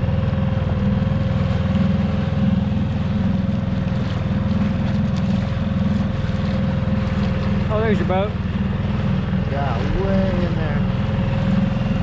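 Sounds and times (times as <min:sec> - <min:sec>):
boat engine rumbling: 0:00.0 - 0:12.0
steady engine whine: 0:00.0 - 0:12.0.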